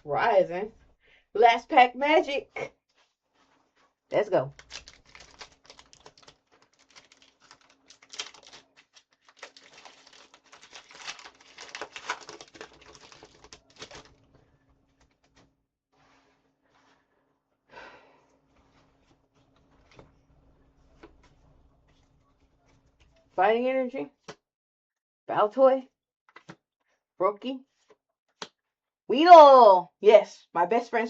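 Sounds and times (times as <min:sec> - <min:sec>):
foil wrapper tearing and crinkling: 0:04.5 - 0:14.2
cards rustling: 0:04.5 - 0:15.5.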